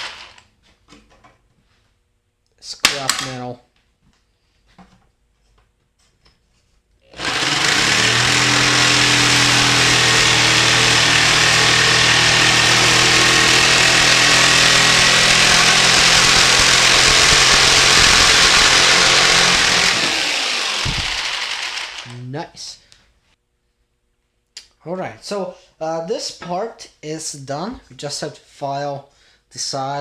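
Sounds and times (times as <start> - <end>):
electric jigsaw cutting metal: 0.0 - 0.4, 7.1 - 22.1.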